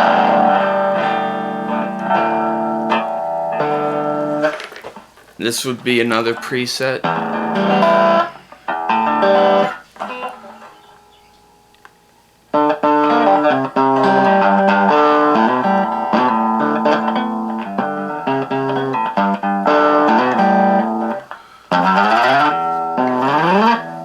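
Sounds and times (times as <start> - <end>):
electric guitar through small amplifier: 0.0 - 5.0, 5.7 - 24.0.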